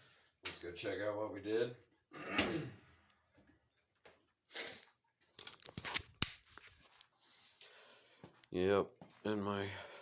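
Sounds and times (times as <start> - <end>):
rustling and handling noises: 4.0 - 9.4
sharp clicks and crinkling: 4.7 - 7.2.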